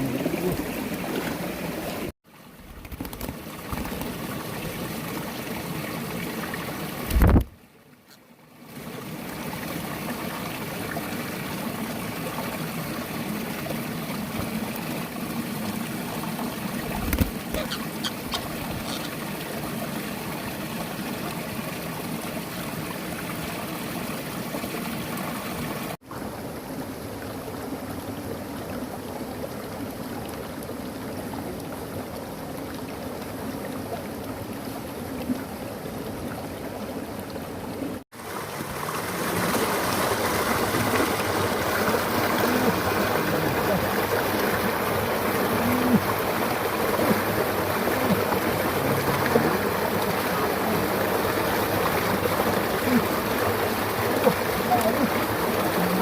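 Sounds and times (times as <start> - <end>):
flowing water rushing: 0.0 - 56.0.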